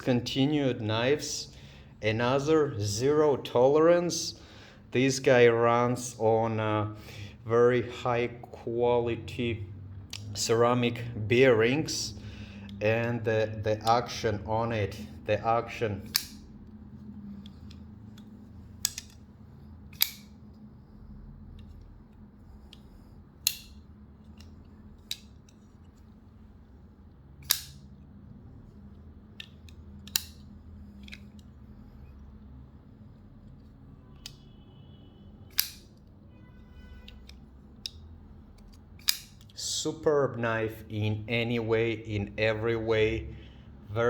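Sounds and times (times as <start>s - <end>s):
knife blade clicking open and shut: 16.0s - 16.5s, 17.4s - 19.2s, 19.9s - 20.4s, 22.6s - 25.6s, 27.4s - 27.9s, 29.4s - 31.5s, 35.5s - 35.9s, 38.6s - 39.5s.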